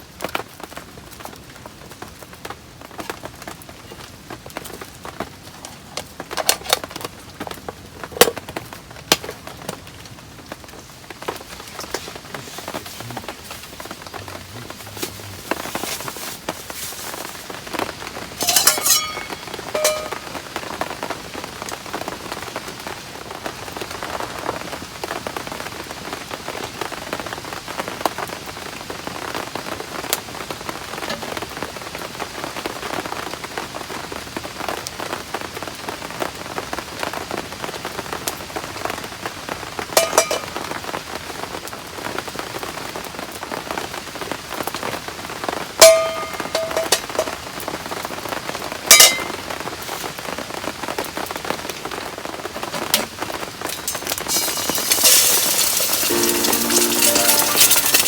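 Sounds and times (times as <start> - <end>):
heavy rain: 0.0 - 18.4, 19.4 - 46.5, 47.2 - 57.8
sharp ringing metal clicks: 18.4 - 20.3.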